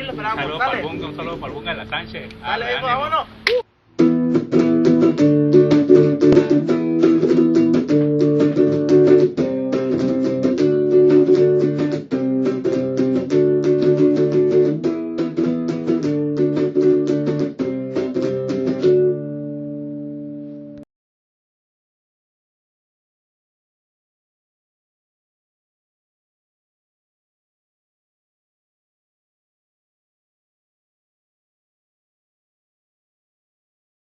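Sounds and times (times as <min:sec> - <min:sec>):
plucked guitar chords: 0:03.5 - 0:20.8.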